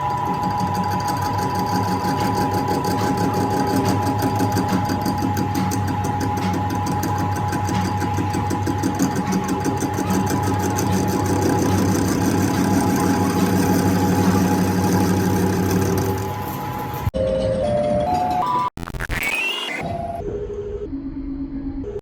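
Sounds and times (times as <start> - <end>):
workshop machine motor hum: 0.0 - 17.1.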